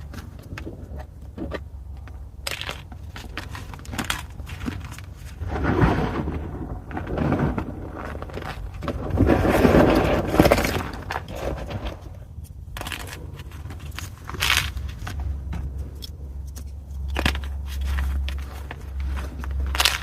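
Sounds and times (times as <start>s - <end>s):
chalk crunching: 9.8s - 20.0s.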